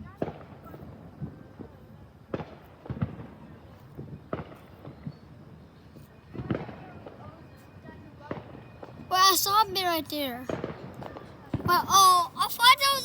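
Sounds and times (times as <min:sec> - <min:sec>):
fireworks bangs and pops: 0:00.0 - 0:05.2, 0:10.4 - 0:13.0.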